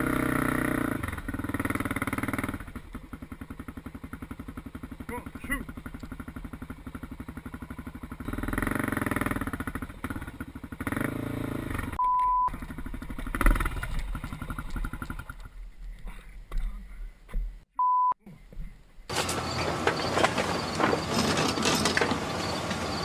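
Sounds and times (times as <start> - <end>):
vehicle engine idling: 1.1 - 17.2
short steady beep: 12.0 - 12.5, 17.8 - 18.2.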